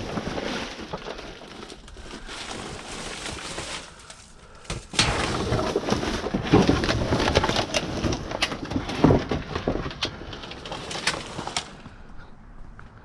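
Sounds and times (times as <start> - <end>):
rummaging through junk: 0.0 - 12.7.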